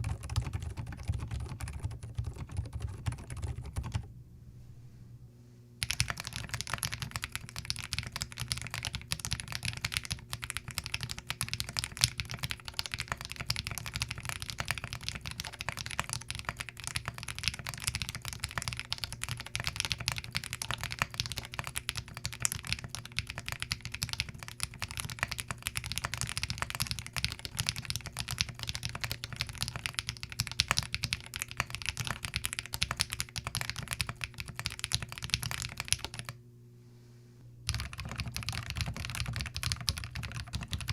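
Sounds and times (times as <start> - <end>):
fast typing on mechanical keyboard: 0.0 - 4.1, 5.8 - 36.4, 37.7 - 40.9.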